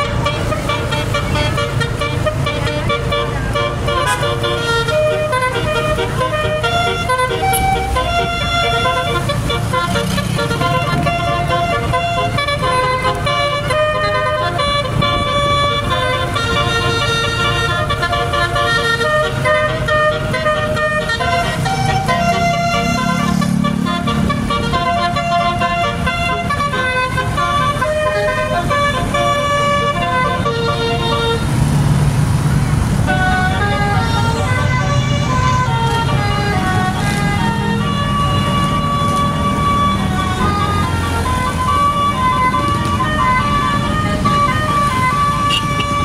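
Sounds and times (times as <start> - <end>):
bus horn playing tune: 0.0 - 31.9, 32.9 - 46.0
bus engine rumble: 0.0 - 46.0.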